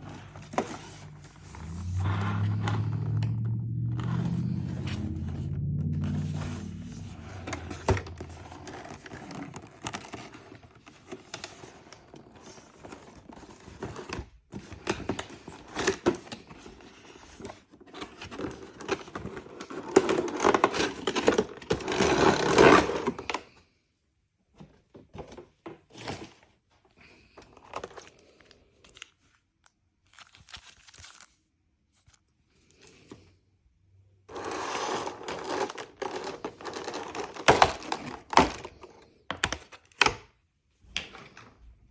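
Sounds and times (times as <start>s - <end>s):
packaging crinkling and tearing: 30.1s - 31.4s.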